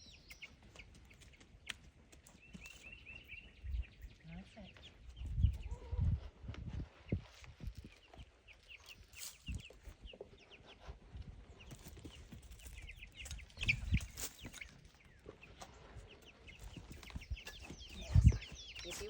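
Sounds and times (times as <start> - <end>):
chicks peeping: 0.0 - 19.0.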